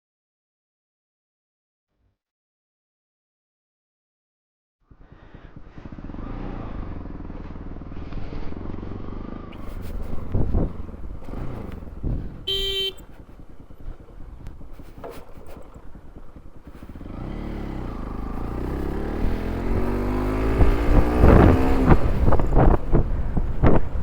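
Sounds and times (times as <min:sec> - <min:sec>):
motorcycle engine accelerating: 0:05.0 - 0:24.0
horn beep: 0:12.5 - 0:13.1.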